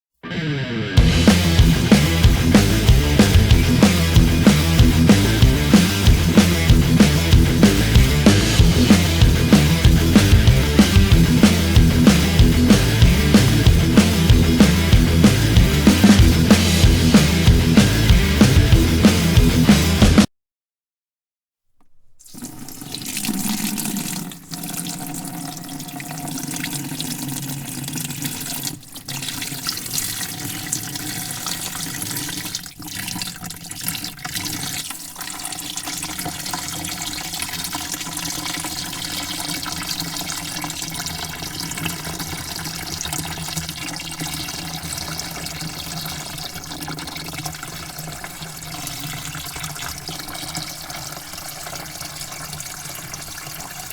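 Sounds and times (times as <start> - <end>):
water pouring into a bucket: 22.1 - 53.9.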